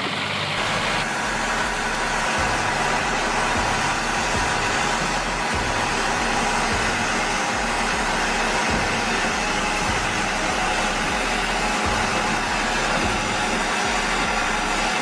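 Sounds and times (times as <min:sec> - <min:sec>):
wood chipper running: 0:00.0 - 0:15.0.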